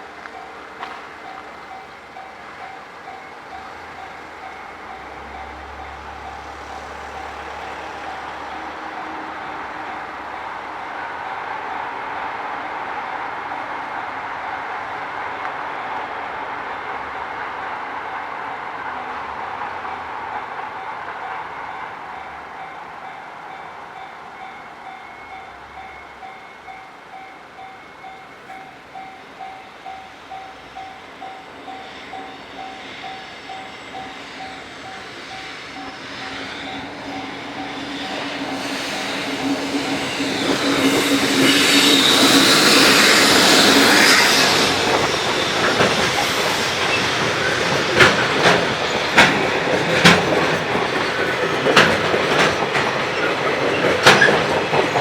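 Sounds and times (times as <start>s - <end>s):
electric locomotive hum: 0.0s - 55.0s
wagon wheels clacking over rail joints: 36.7s - 55.0s.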